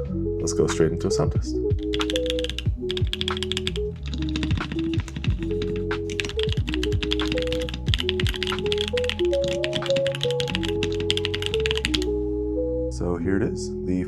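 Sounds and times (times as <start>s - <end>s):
background music with bass line: 0.0s - 13.0s
mechanical keyboard typing: 1.8s - 12.1s.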